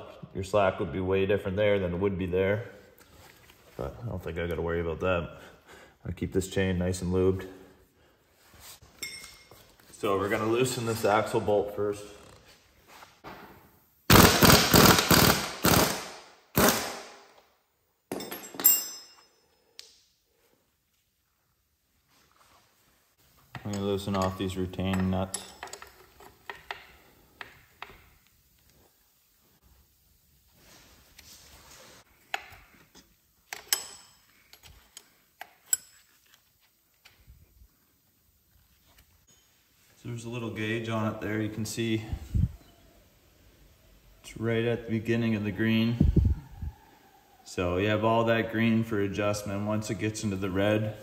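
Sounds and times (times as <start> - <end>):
sharp metal clinks: 9.0 - 9.6, 18.1 - 19.7
impact wrench impacts: 14.1 - 17.4, 18.1 - 19.4, 33.5 - 36.2
wrench scraping: 33.5 - 36.5.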